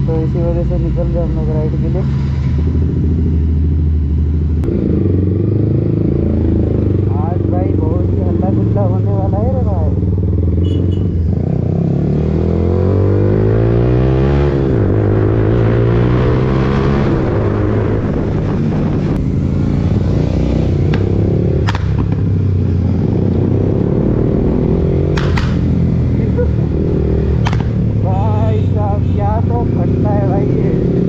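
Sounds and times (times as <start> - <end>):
motorcycle engine revving: 0.0 - 31.0
exhaust pops and crackles: 20.9 - 22.3, 25.1 - 25.8, 27.4 - 27.9.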